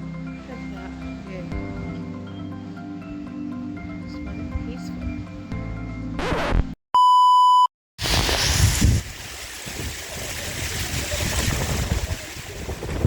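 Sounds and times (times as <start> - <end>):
loud electronic beep: 6.2 - 7.7
wind buffeting microphone: 8.4 - 13.0.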